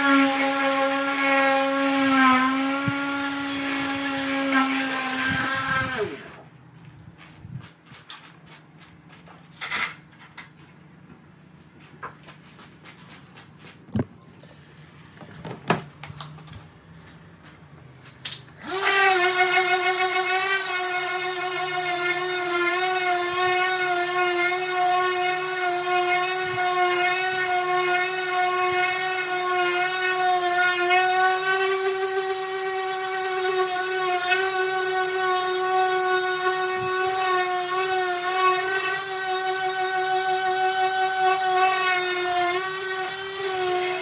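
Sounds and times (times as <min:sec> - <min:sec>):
electric power sander whining: 0:00.0 - 0:06.4, 0:18.6 - 0:44.0.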